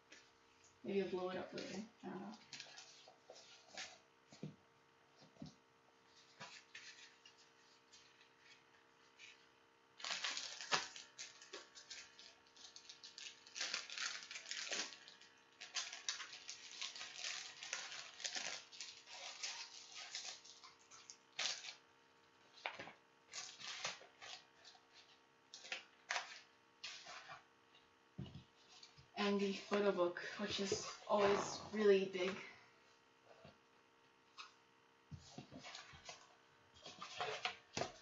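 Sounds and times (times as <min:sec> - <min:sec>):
packaging crinkling and rustling: 0:10.0 - 0:21.9, 0:22.5 - 0:27.5, 0:35.2 - 0:38.0.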